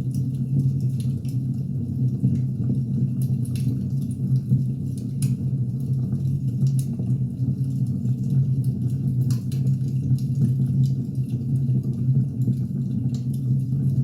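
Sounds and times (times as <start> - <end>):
wood fire rumbling: 0.0 - 14.0
fire crackling and popping: 3.2 - 14.0.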